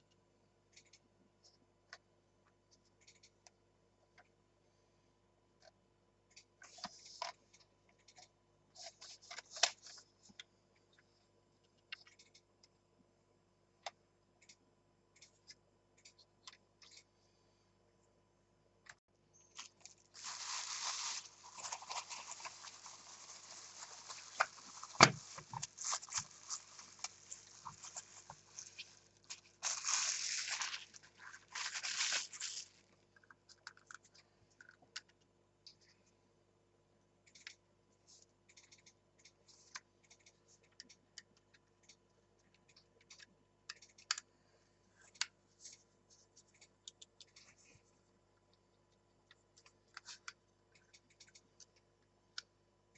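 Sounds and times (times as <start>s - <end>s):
packaging crinkling and tearing: 19.5s - 33.0s.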